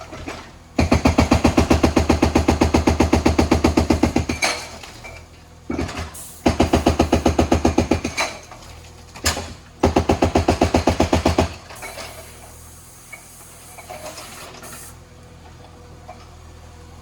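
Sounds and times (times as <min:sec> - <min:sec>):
hydraulic breaker hammering: 0:00.1 - 0:04.9, 0:05.7 - 0:08.5, 0:09.2 - 0:12.2.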